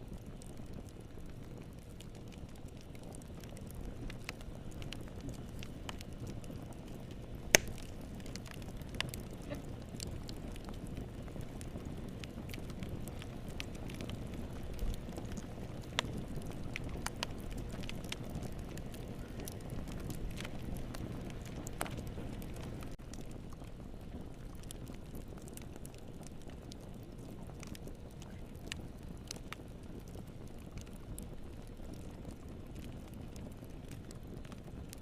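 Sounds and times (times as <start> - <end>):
wood fire crackling and popping: 0.0 - 35.0.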